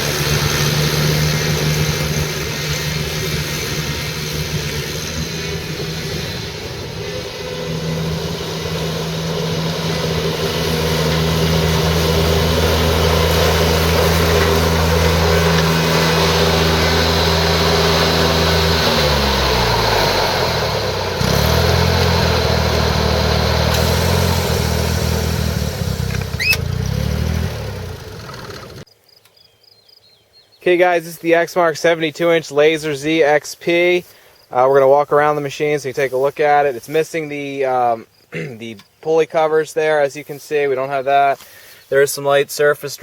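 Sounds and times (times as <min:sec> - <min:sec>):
lawn mower engine running: 0:00.0 - 0:28.9.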